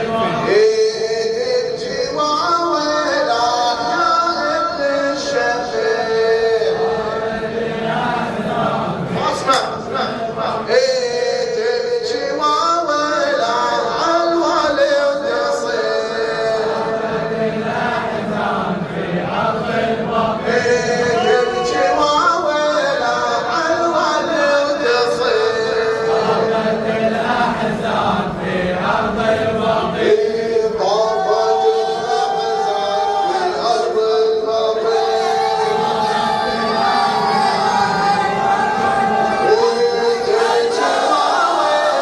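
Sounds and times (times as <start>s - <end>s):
men chanting a lament: 0.0s - 42.0s.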